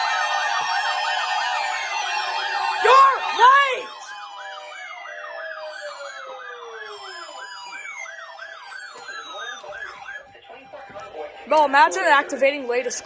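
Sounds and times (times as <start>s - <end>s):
siren tone sliding down: 0.0s - 11.1s
yelp siren: 0.0s - 13.0s.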